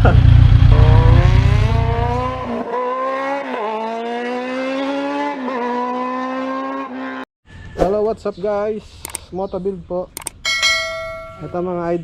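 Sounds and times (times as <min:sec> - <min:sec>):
motorcycle accelerating through gears: 0:00.0 - 0:07.2.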